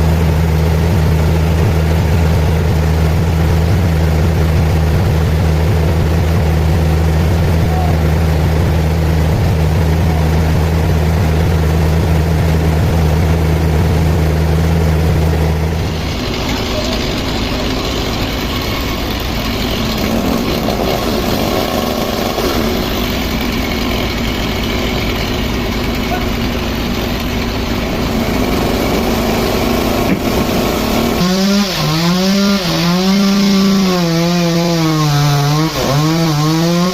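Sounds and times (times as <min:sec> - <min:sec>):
large engine humming: 0:00.0 - 0:36.9.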